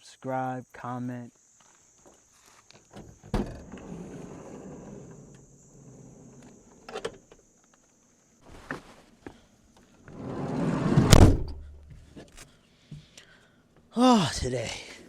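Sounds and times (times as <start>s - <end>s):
high insect chirring: 0.6s - 8.4s.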